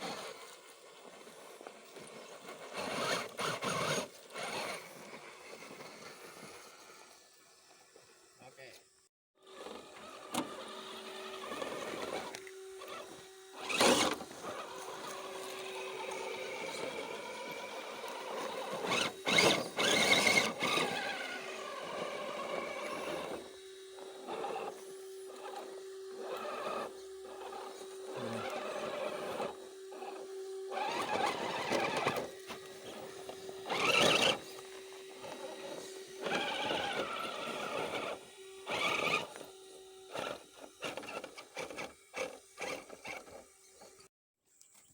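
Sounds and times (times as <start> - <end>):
electric motor whining: 0.0 - 8.8, 9.4 - 44.1.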